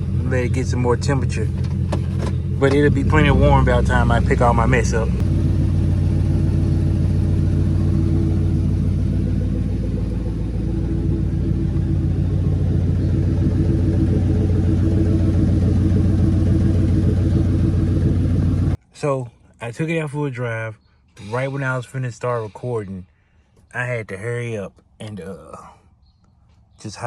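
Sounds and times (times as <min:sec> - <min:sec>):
car engine idling: 0:00.0 - 0:18.8.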